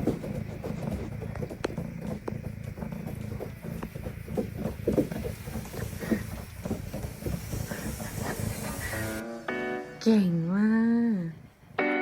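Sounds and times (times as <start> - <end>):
cat paws pattering: 0.0 - 9.2
wooden wheel rumbling: 0.0 - 9.2.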